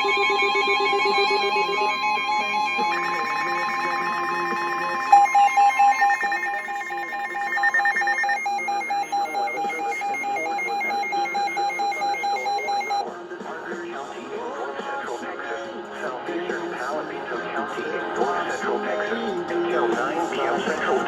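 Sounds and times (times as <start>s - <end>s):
electronic alert tones: 0.0s - 13.0s
rapid high beeping: 0.0s - 13.0s
repeating beep: 0.0s - 13.0s
broadcast audio: 0.0s - 21.0s.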